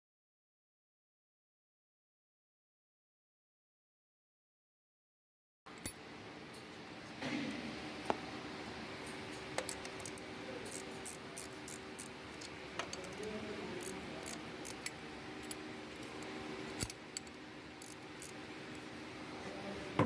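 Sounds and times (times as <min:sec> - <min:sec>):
steady low hum: 0:05.7 - 0:20.0.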